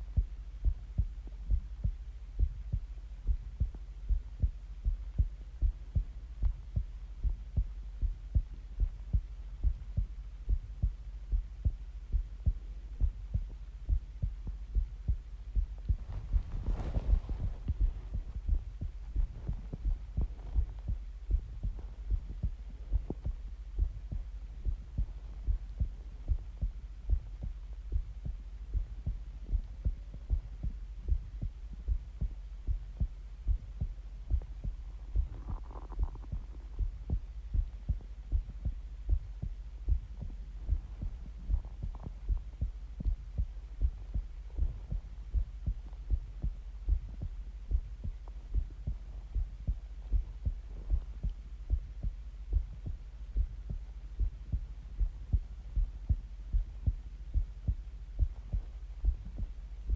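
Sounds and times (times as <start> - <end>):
constant low hum: 0.0 - 59.9
heartbeat thumps: 0.0 - 59.9.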